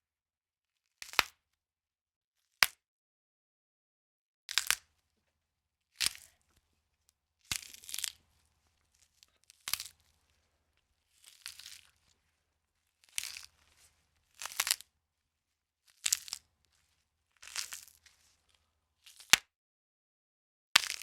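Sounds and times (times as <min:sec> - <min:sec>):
bone cracking crunches: 0:06.0 - 0:06.4, 0:09.2 - 0:10.0, 0:11.2 - 0:12.1, 0:13.0 - 0:13.6, 0:14.4 - 0:14.9, 0:16.0 - 0:16.4, 0:17.4 - 0:18.0.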